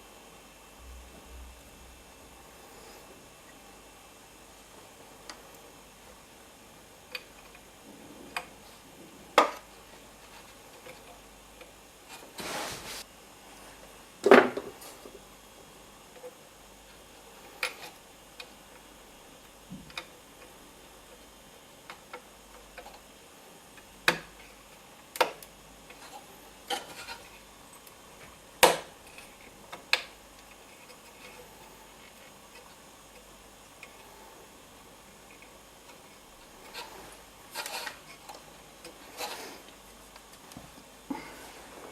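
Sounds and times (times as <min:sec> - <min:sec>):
short rustle: 0:12.3 - 0:13.1.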